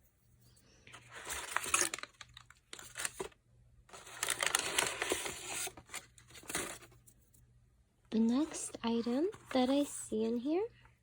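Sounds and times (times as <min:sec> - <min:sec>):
packaging rustling and crinkling: 0:01.0 - 0:07.0.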